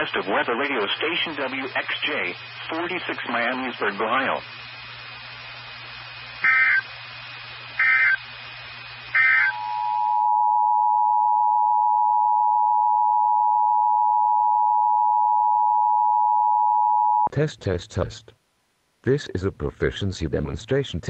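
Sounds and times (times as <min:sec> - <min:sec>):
radio hiss: 0:00.0 - 0:10.0
electronic data screeches: 0:06.4 - 0:06.9, 0:07.8 - 0:08.2, 0:09.2 - 0:09.7
steady alarm tone: 0:06.4 - 0:06.9, 0:07.8 - 0:08.2, 0:09.1 - 0:17.3.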